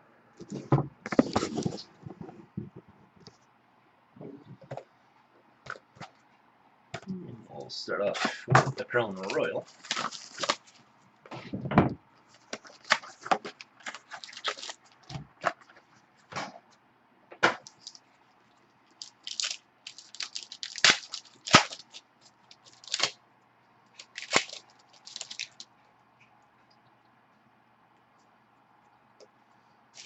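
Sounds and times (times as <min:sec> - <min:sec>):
wrapper tearing and crinkling: 0:01.1 - 0:01.9, 0:09.2 - 0:10.8, 0:12.3 - 0:15.1, 0:17.6 - 0:18.0, 0:18.9 - 0:23.2, 0:24.0 - 0:25.7
sharp wrapper snaps: 0:18.9 - 0:23.2, 0:24.0 - 0:25.7.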